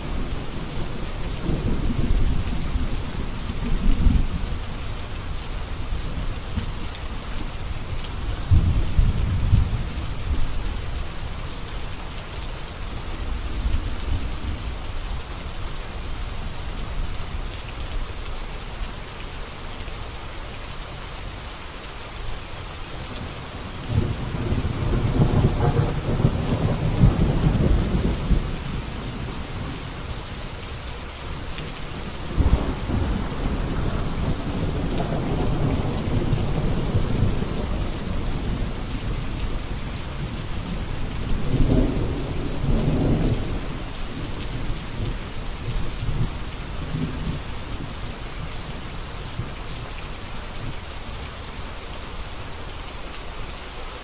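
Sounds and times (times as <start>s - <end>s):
steady rain falling: 0.0s - 54.0s
rolling thunder: 23.5s - 29.9s, 31.8s - 47.8s.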